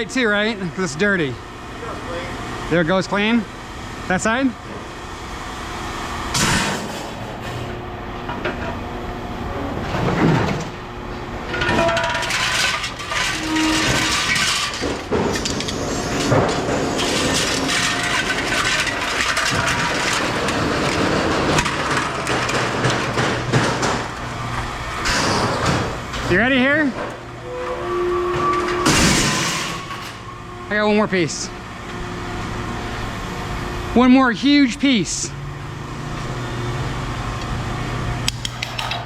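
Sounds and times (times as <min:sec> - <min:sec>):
scrap metal clanking onto pile: 0:11.5 - 0:24.2, 0:28.4 - 0:30.2.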